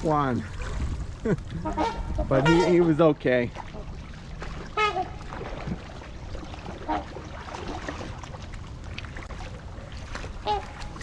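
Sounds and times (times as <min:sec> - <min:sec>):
waterfowl honking: 0:01.6 - 0:05.6, 0:06.2 - 0:08.0, 0:10.4 - 0:11.0.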